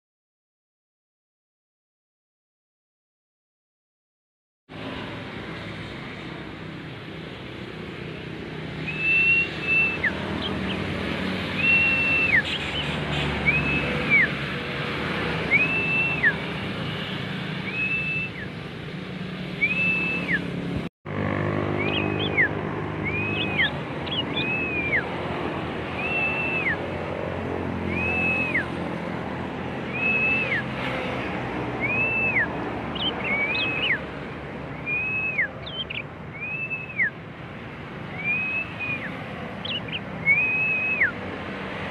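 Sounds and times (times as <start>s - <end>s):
bird chirps: 8.8s - 10.9s, 11.5s - 14.4s, 17.6s - 18.5s, 21.7s - 25.2s, 25.9s - 26.8s, 29.8s - 30.7s, 31.8s - 37.2s, 38.1s - 41.2s
bird whistling song: 8.8s - 14.4s, 15.4s - 16.5s, 17.6s - 18.6s, 19.5s - 20.6s, 21.7s - 25.2s, 25.8s - 26.9s, 27.8s - 28.8s, 29.8s - 30.8s, 31.8s - 37.2s, 38.0s - 41.2s.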